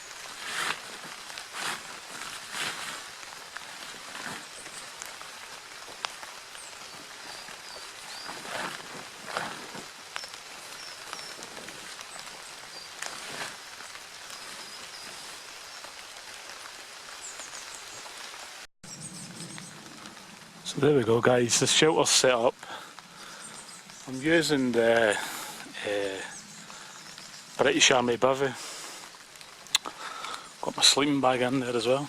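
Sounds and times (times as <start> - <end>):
rustling: 0.0 - 16.6
rain hiss: 0.0 - 32.0
bird chirps: 18.9 - 20.2.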